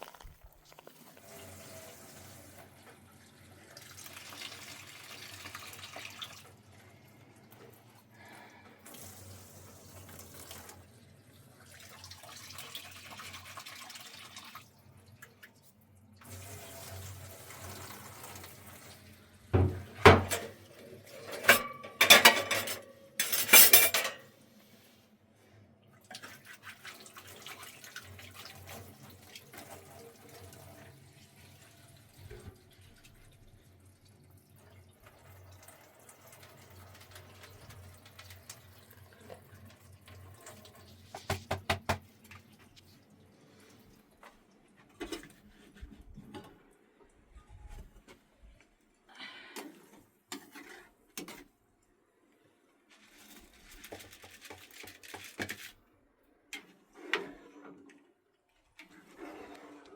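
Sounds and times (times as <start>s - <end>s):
water pouring and splashing: 0.0s - 22.4s, 26.0s - 45.8s, 52.9s - 55.8s
clatter of knocks and clanks: 19.6s - 20.5s.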